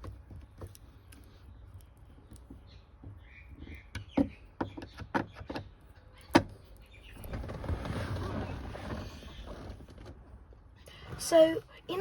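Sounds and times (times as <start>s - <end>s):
rustling and scraping: 7.0s - 12.0s.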